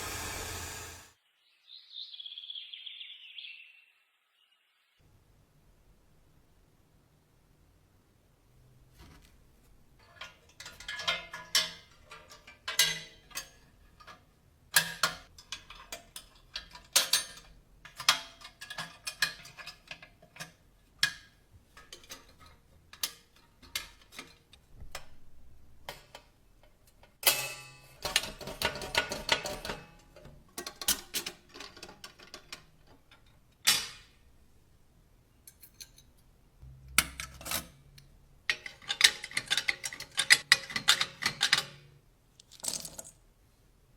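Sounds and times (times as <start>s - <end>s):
cash register parts clicking and rattling: 28.0s - 29.9s, 38.5s - 41.8s.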